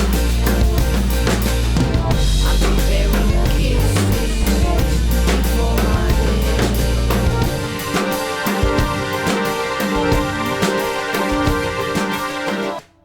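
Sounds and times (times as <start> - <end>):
heavy bass line: 0.0 - 8.0
drum kit beat: 0.0 - 12.8.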